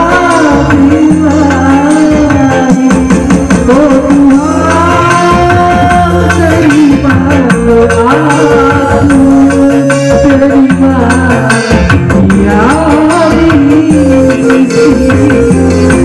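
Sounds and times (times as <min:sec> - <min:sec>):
loud music with singing and bass: 0:00.0 - 0:16.0.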